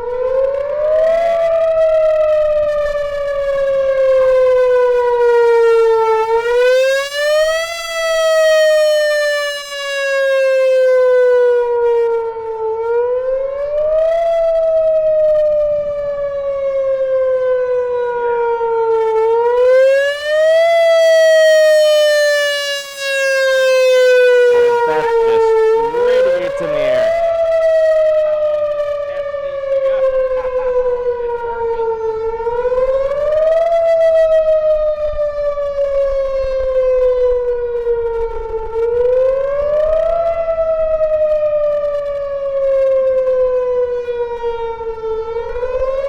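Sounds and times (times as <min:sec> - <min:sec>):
warning siren wailing: 0:00.0 - 0:46.0.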